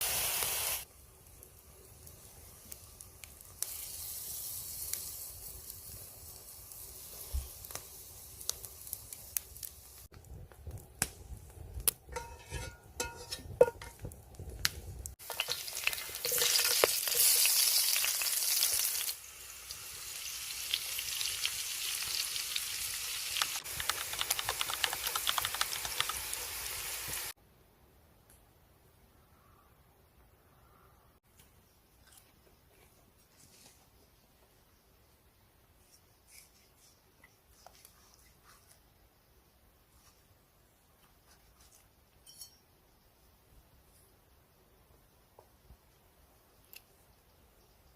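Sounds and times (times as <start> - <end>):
food sizzling in hot oil: 0.0 - 0.9, 2.2 - 10.1, 15.2 - 27.4
utensil stirring clicks and scrapes: 23.6 - 26.2.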